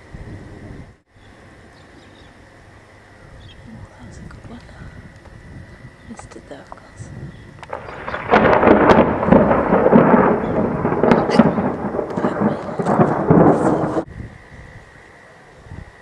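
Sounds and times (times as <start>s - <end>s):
thunder clap and rumble: 7.5s - 14.5s.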